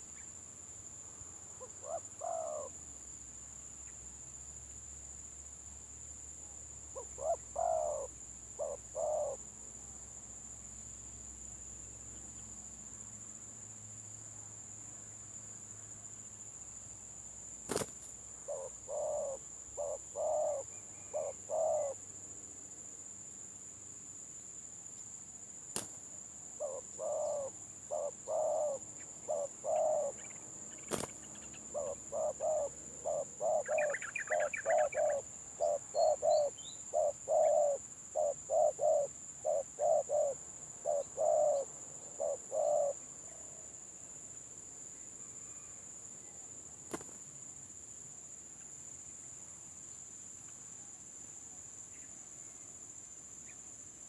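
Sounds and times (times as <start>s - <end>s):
doves cooing: 7.0s - 9.4s, 18.5s - 22.0s, 26.6s - 43.0s.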